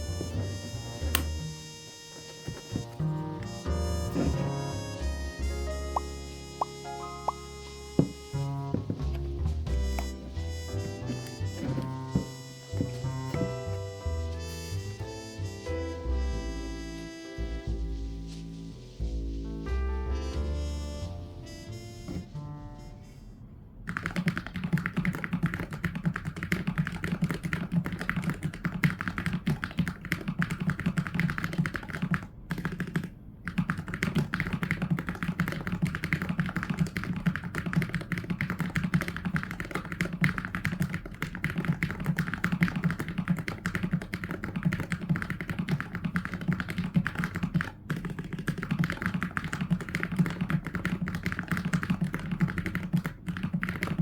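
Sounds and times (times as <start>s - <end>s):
fast keyboard typing: 23.9s - 54.0s.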